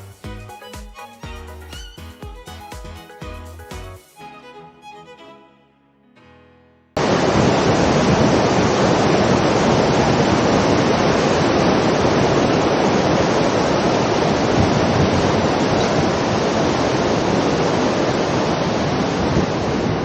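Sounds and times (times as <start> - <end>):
waterfall rushing: 7.0 - 20.0.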